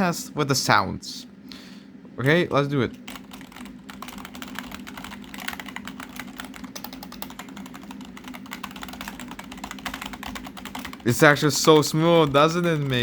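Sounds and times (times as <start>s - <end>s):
rapid typing on keyboard: 3.0s - 13.0s.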